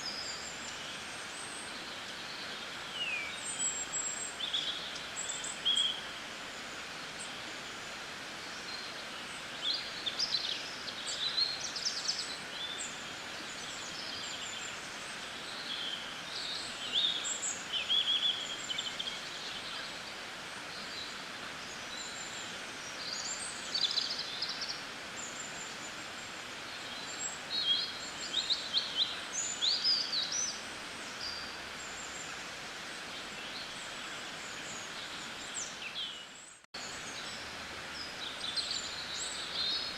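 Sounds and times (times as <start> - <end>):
small birds chirping: 0.0 - 39.9
steady background hiss: 0.0 - 39.9.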